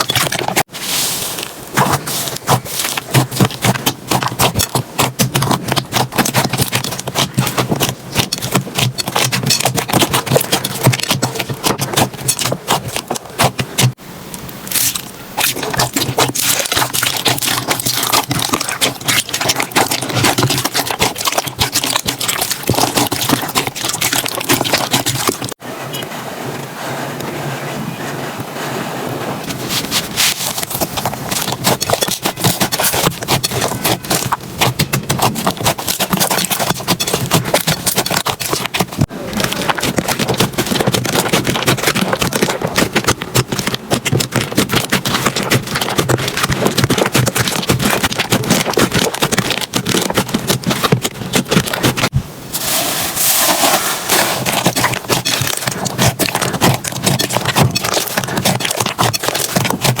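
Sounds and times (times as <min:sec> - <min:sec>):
slime squeezed crackling and popping: 0:01.8 - 0:14.0, 0:14.7 - 0:25.6.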